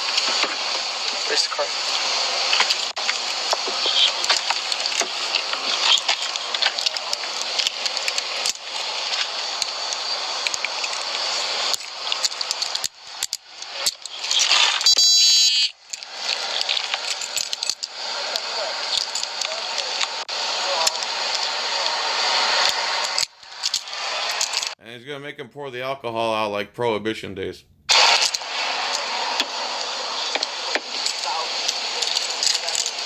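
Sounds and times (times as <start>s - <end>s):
short electronic tone: 14.9s - 15.6s.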